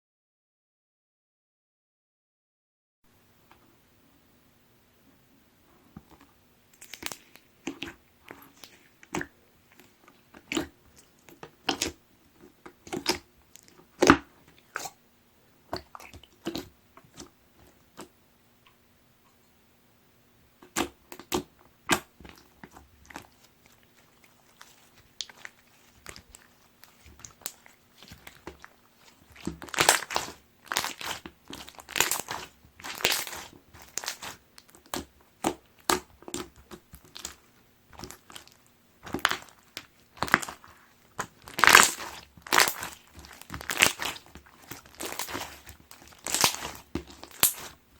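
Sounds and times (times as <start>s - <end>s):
slime popping and crackling: 6.7s - 12.0s, 12.6s - 15.0s, 15.7s - 18.1s, 20.6s - 47.9s.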